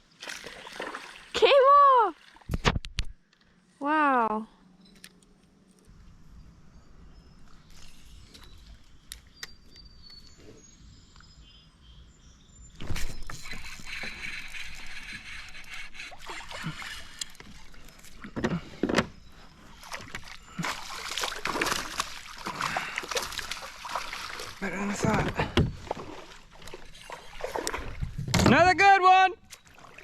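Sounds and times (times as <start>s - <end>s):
water splashing and sloshing: 0.0s - 2.9s, 12.8s - 28.8s, 29.4s - 30.0s.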